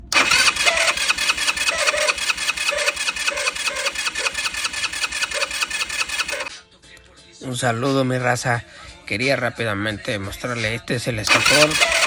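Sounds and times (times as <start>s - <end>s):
scooter starter motor rattling: 0.0s - 6.5s, 11.3s - 12.0s.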